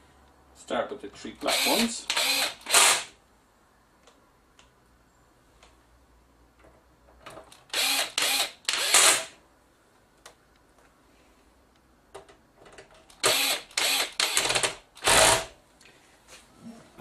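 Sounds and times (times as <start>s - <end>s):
electric screwdriver whirring: 1.5s - 3.1s, 7.7s - 9.3s, 13.2s - 15.5s.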